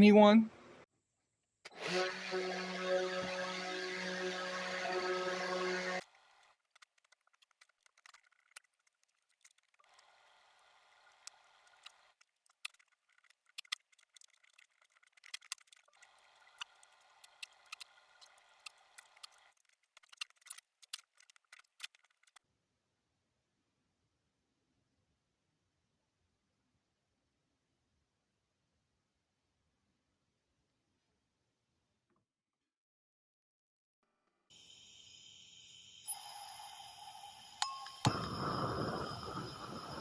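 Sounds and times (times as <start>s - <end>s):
small hard objects clicking: 6.4s - 10.1s, 11.1s - 22.4s.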